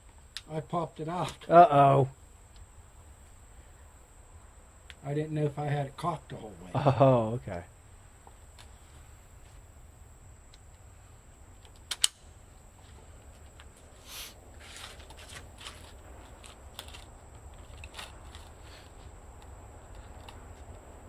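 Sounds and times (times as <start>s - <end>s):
light clicks and rustling: 14.6s - 20.9s.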